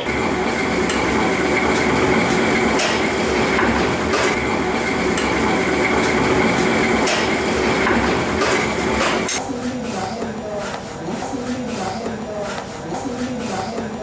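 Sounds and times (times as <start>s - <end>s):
machinery clatter: 0.0s - 9.4s.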